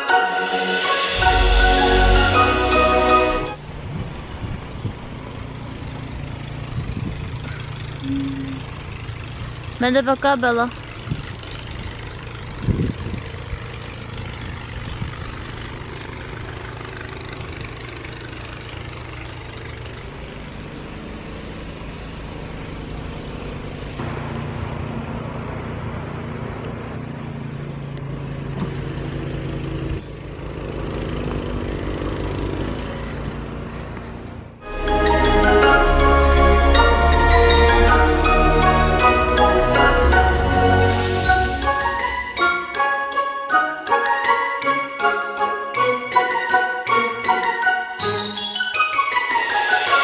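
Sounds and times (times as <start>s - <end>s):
snowblower engine running: 4.9s - 26.4s.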